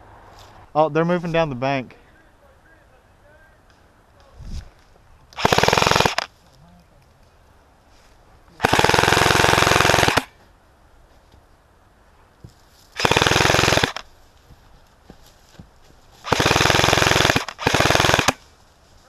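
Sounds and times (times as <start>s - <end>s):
airsoft rifle full-auto bursts: 5.4s - 6.3s, 8.6s - 10.3s, 13.0s - 14.1s, 16.2s - 18.4s.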